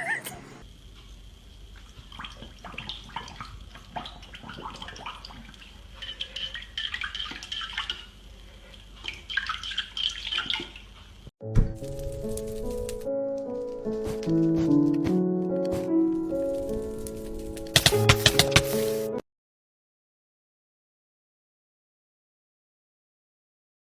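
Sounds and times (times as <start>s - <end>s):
water drips and clicks: 1.7s - 8.1s, 9.0s - 11.0s
running splashing water: 1.7s - 10.9s
music: 11.4s - 19.2s.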